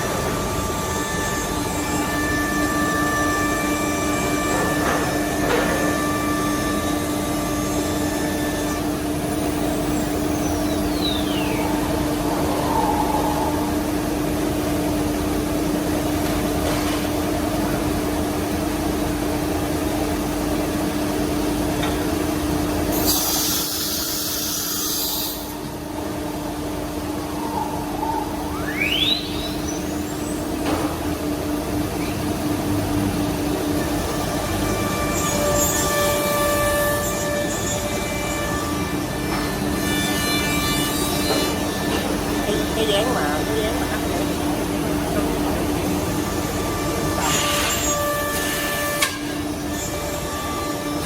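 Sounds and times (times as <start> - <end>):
spindle whine: 9.5 - 15.4
air hiss: 22.9 - 25.5.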